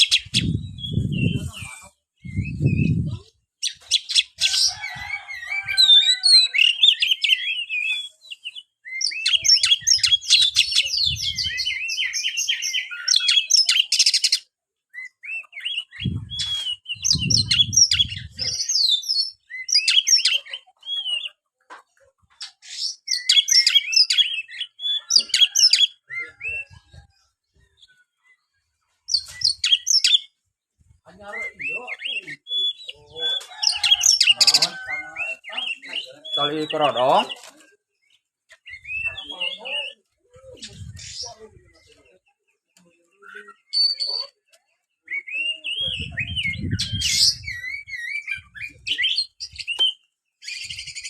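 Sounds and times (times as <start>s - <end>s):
bird singing whistles and trills: 0.0s - 4.4s, 5.0s - 21.2s, 22.7s - 27.0s, 29.1s - 30.4s, 31.2s - 36.8s, 38.6s - 40.0s, 43.1s - 44.4s, 45.0s - 51.0s.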